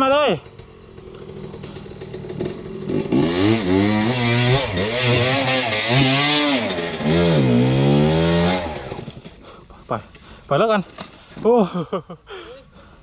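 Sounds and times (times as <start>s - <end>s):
dirt bike engine revving: 0.0s - 9.4s.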